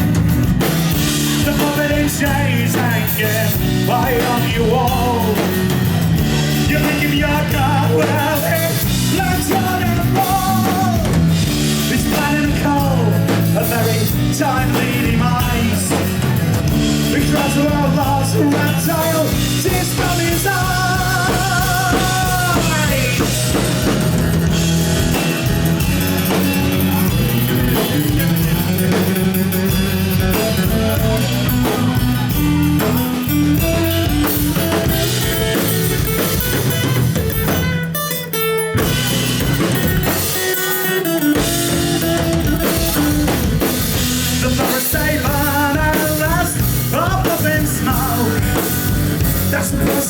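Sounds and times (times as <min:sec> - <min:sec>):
rock band playing: 0:00.0 - 0:50.0.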